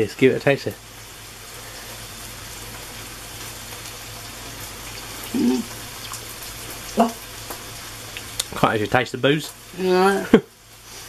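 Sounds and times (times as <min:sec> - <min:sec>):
food sizzling in a pan: 0:00.0 - 0:11.0
voice murmur: 0:05.2 - 0:05.7.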